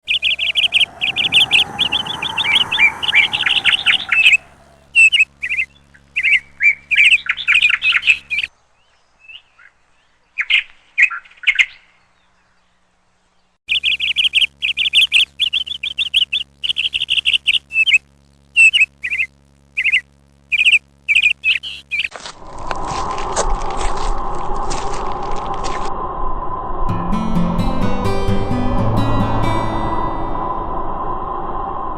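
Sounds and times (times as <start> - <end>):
low tone: 0.0 - 5.0, 26.9 - 31.9
songbird chirping: 0.0 - 17.9.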